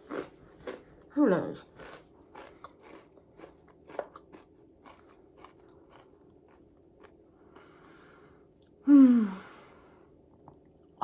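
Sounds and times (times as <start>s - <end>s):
person chewing crunchy food: 0.0s - 8.7s.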